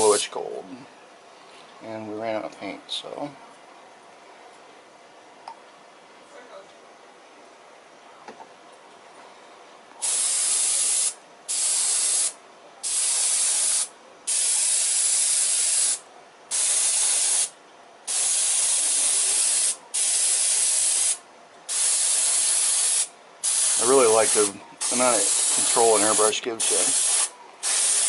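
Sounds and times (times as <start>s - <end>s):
airbrush spraying hiss: 10.0s - 17.5s, 18.1s - 28.0s.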